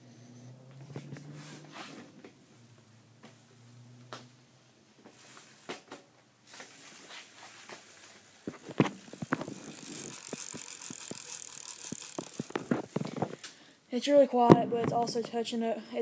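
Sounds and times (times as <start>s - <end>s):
freewheel clicks and knocks: 8.7s - 13.4s
spinning wheel hiss: 9.0s - 12.8s.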